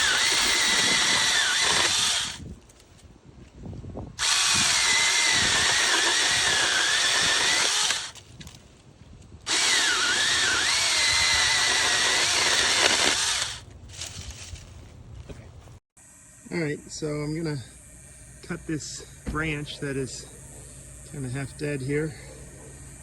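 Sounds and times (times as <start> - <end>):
electric chainsaw whining: 0.0 - 2.4, 4.2 - 8.2, 9.5 - 13.6.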